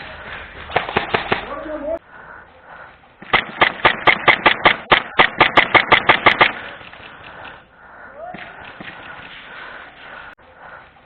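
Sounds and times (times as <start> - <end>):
airsoft gun rapid shots: 0.7 - 1.6, 3.2 - 6.7.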